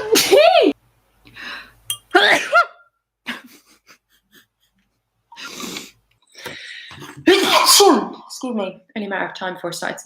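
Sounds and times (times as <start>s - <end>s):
hissing breath: 5.3s - 7.6s
woman sneezing: 7.3s - 8.2s.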